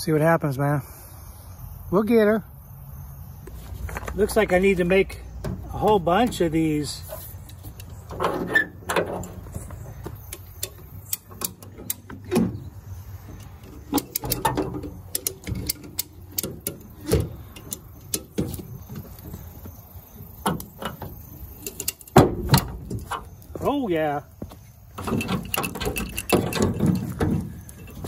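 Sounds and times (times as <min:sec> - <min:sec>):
hand tools clicking and knocking: 0:05.3 - 0:23.7, 0:24.9 - 0:28.0.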